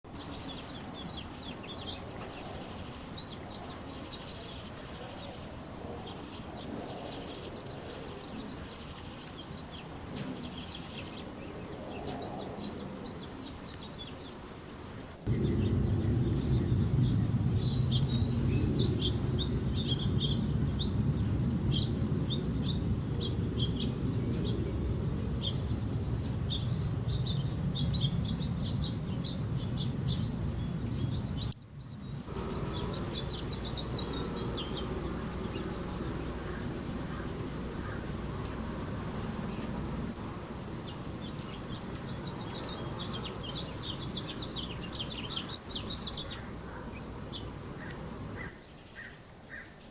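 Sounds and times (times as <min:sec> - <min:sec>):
hummingbirds chittering: 0:00.1 - 0:49.9
steady low hum: 0:15.2 - 0:48.4.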